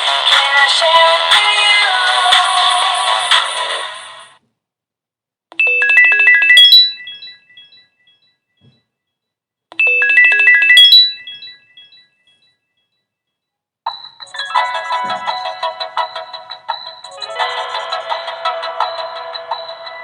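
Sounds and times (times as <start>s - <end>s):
phone ringtone: 5.6s - 8.5s, 9.8s - 12.9s, 13.9s - 20.0s.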